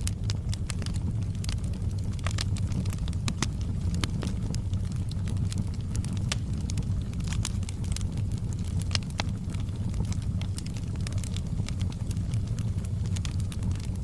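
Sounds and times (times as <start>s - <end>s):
wood fire crackling and popping: 0.0s - 14.0s.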